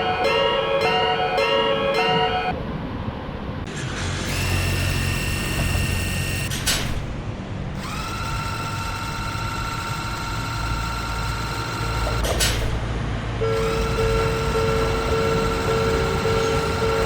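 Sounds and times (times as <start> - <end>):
level-crossing alarm: 0.0 - 2.6, 4.3 - 6.6, 7.8 - 12.6, 13.4 - 17.0
train motor whine and rumble: 0.0 - 17.0.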